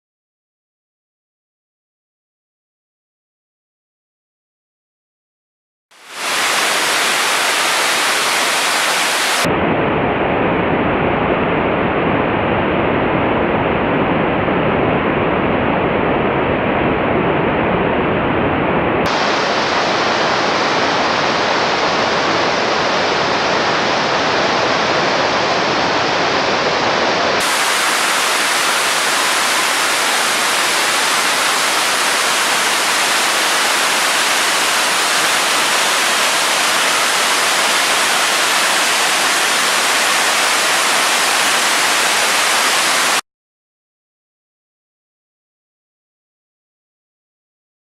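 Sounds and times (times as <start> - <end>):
waterfall rushing: 6.0 - 9.5, 19.1 - 43.2.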